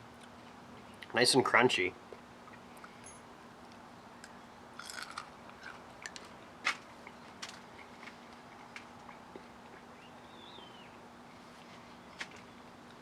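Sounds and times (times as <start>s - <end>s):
chewing crunches: 4.2s - 9.9s.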